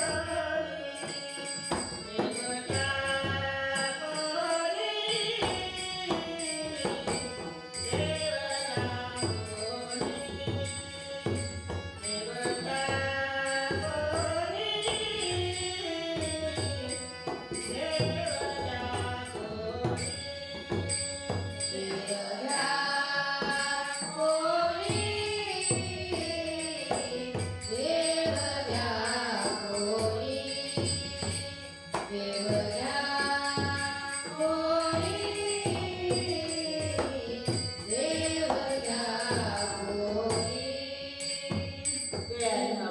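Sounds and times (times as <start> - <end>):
woman's lead voice singing: 0.0 - 11.4, 21.7 - 42.9
women's group singing devotional song: 0.0 - 20.8, 21.6 - 42.9
jingling percussion: 0.0 - 42.9.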